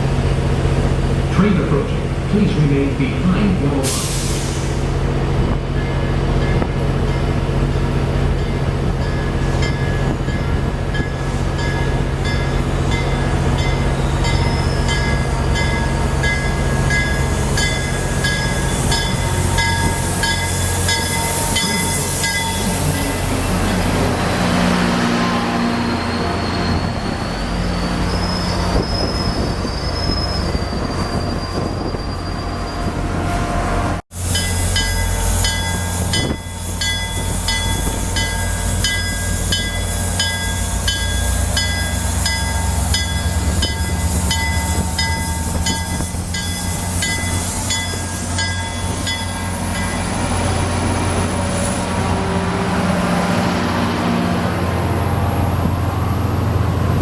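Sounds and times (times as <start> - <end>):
locomotive bell ringing: 5.7 - 7.4, 8.3 - 23.6, 34.4 - 50.3.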